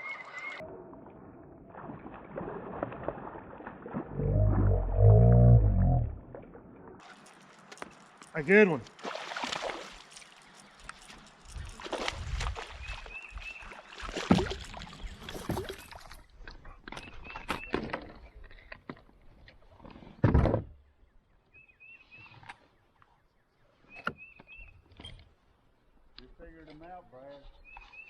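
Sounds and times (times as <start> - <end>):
water splashing: 0.9 - 7.8, 8.5 - 16.5.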